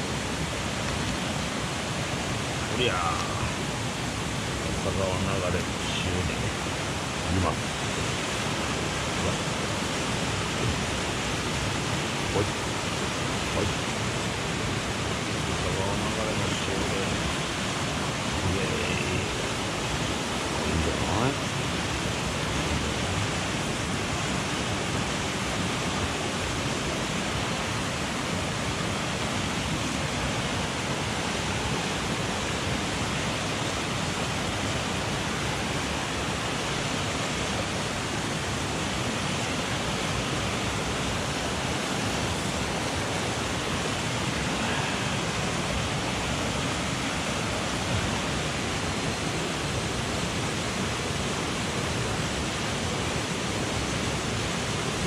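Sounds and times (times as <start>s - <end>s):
mountain stream rushing: 0.0s - 55.0s.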